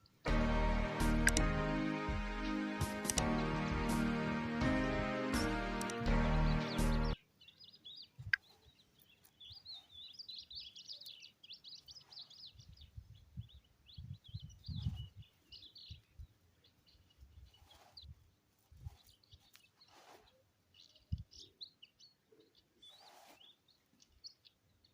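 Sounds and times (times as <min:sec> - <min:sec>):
background music: 0:00.0 - 0:07.2
small birds chirping: 0:04.6 - 0:24.9.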